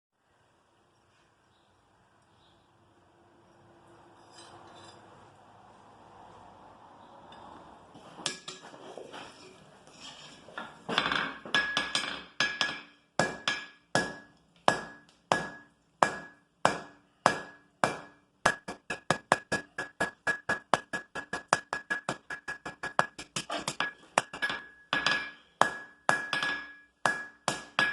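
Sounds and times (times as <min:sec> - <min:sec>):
hammer striking iron on anvil: 0:11.5 - 0:27.9.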